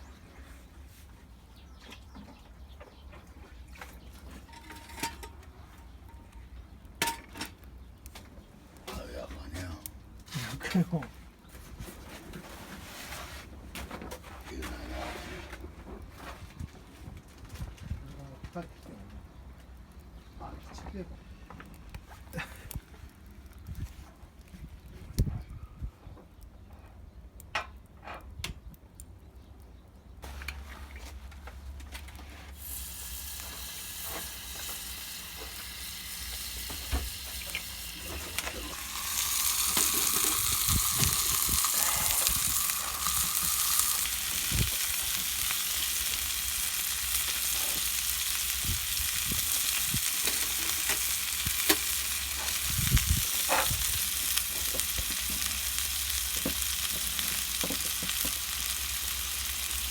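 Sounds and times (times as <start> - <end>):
steak sizzling on a grill: 32.5 - 59.9.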